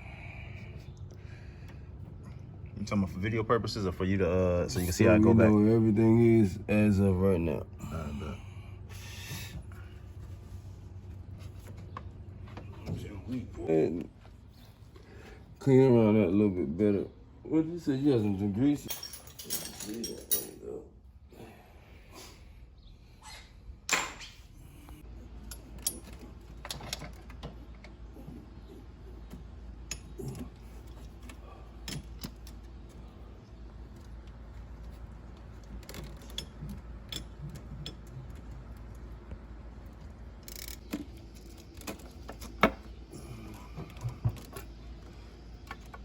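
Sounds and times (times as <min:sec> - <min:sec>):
metal tools clinking and knocking: 0:18.6 - 0:20.8, 0:25.4 - 0:27.9, 0:35.6 - 0:38.5.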